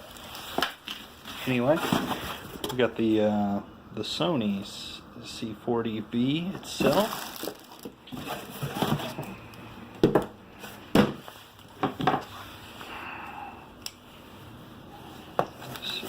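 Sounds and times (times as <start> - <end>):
packaging crinkling and rustling: 0.0 - 2.8, 6.6 - 9.4.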